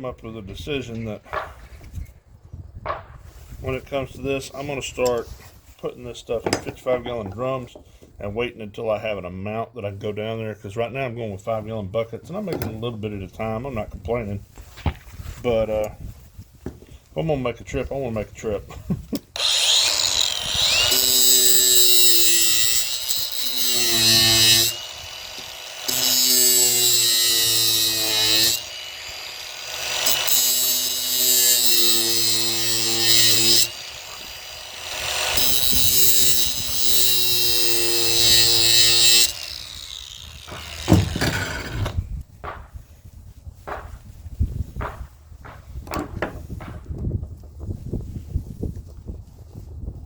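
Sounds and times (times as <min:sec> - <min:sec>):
power tool motor whine: 0:19.4 - 0:42.0.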